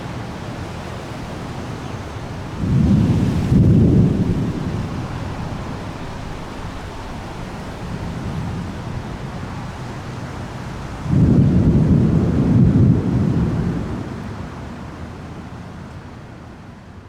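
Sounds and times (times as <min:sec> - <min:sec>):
rain hiss: 0:00.0 - 0:16.5
wind: 0:00.0 - 0:17.0
thunder rumbling: 0:02.4 - 0:15.5.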